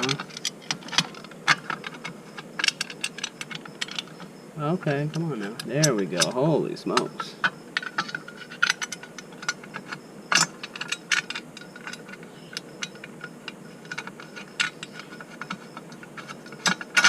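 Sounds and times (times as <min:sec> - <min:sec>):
hand tools clicking on metal: 0:05.1 - 0:17.0.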